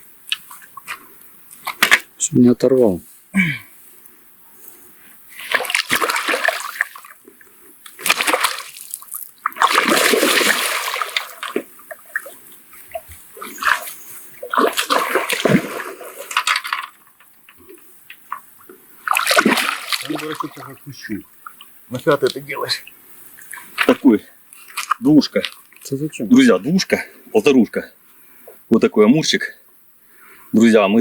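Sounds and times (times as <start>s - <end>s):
fish splashing in water: 5.4s - 7.2s, 8.0s - 17.2s, 19.0s - 20.7s.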